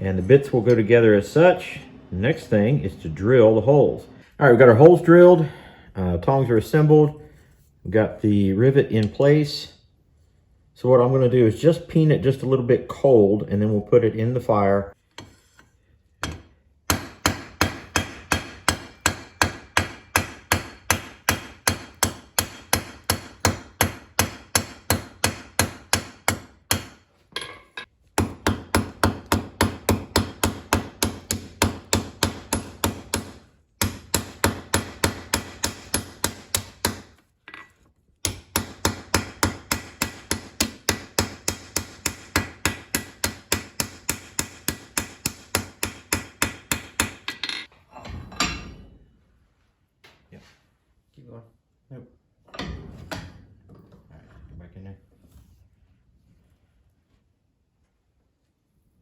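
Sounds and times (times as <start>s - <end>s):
hammer striking metal: 16.2s - 47.7s.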